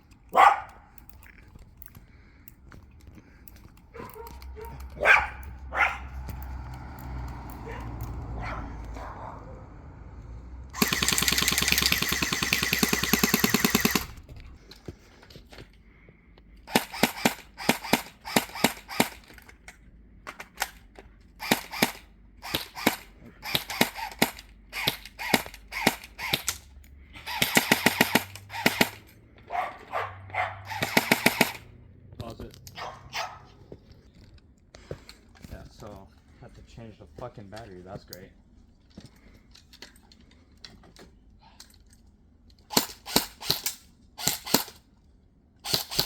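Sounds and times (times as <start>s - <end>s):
electric airsoft rifle firing: 10.8s - 14.4s, 16.7s - 19.3s, 21.4s - 29.0s, 30.7s - 31.8s, 42.7s - 44.8s, 45.6s - 46.0s.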